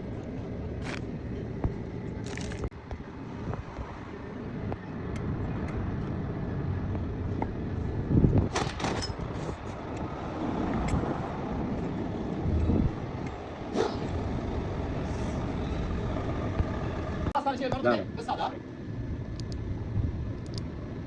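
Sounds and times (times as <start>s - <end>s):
vehicle engine running: 9.1s - 17.4s.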